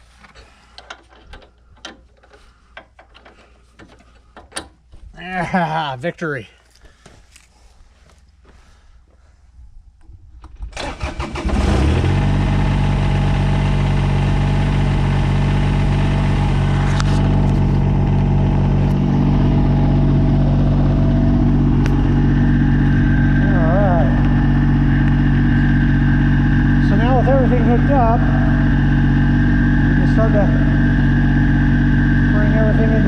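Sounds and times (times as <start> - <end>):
starter cranking engine: 10.5 - 33.0
diesel tractor engine idling: 10.8 - 33.0.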